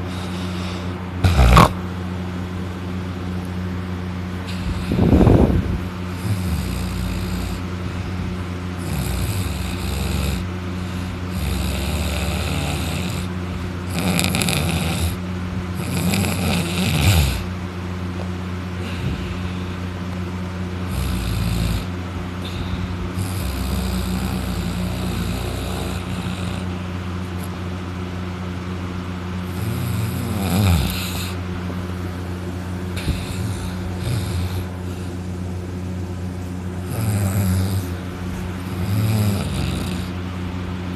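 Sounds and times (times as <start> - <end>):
man snoring loudly: 0.0 - 1.8, 4.5 - 17.5, 20.8 - 27.6, 29.4 - 31.4, 33.0 - 35.2, 36.8 - 40.2.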